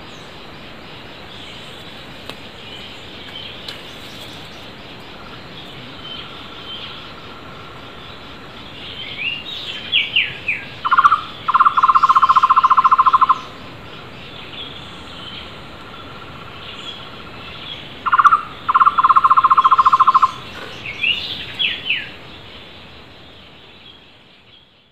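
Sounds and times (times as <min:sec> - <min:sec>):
birds whistling: 0:08.9 - 0:13.6, 0:17.7 - 0:22.2
faint bird trill: 0:09.0 - 0:13.6, 0:18.0 - 0:22.2
barbet call with rapid trill: 0:10.0 - 0:13.6, 0:18.0 - 0:22.1.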